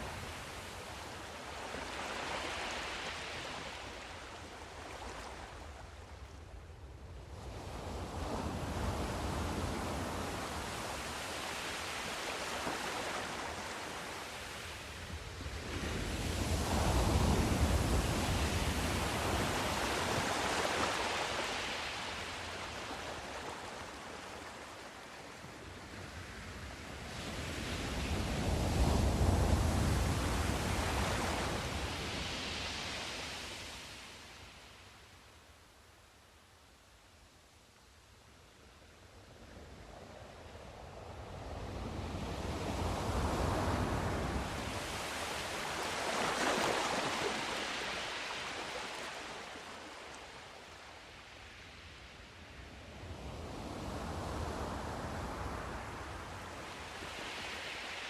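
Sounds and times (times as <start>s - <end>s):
sea waves surging: 43.3s - 51.1s.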